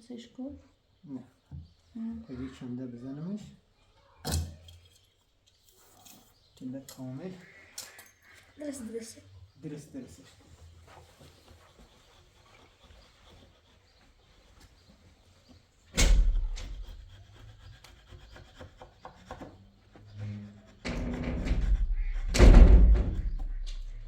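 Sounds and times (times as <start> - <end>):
wooden door banging shut: 15.9 - 16.9, 20.2 - 24.0
banging and knocking on door: 15.9 - 17.0, 19.3 - 24.0.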